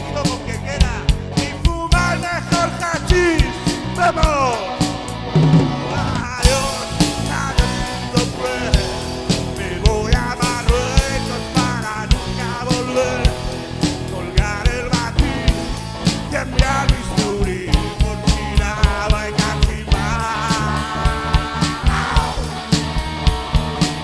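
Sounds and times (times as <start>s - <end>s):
drum kit beat: 0.0s - 24.0s
live rock band instrumental: 0.0s - 24.0s.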